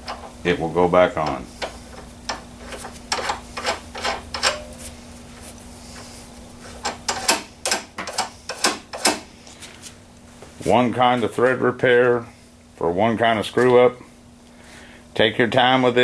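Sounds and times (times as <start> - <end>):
nut scraping on bolt threads: 1.2 - 4.8, 6.7 - 9.2.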